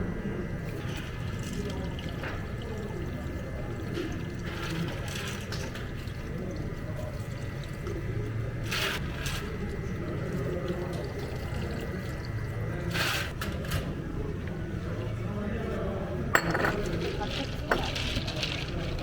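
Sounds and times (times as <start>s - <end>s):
low machine hum: 0.0s - 19.0s
liquid sounds: 0.6s - 13.4s.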